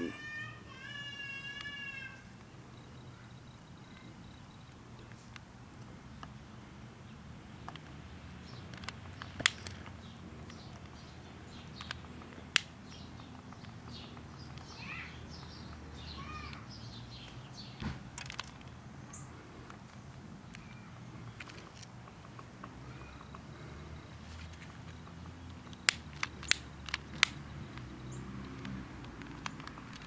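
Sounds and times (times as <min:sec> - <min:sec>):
birds chirping: 0:00.0 - 0:30.0
fire burning with pops: 0:08.6 - 0:14.7, 0:24.5 - 0:27.9.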